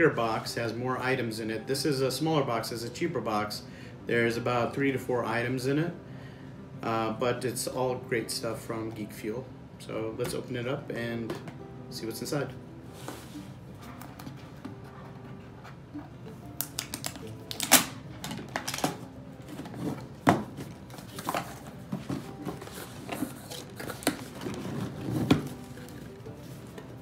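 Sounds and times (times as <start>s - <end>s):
cardboard box clicks and snaps: 16.6s - 17.9s.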